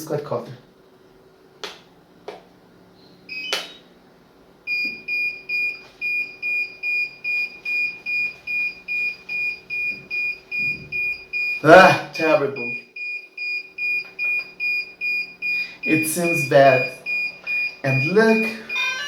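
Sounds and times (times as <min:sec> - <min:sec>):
high warning beep: 0:04.7 - 0:19.0
start-up tones: 0:14.6 - 0:19.0.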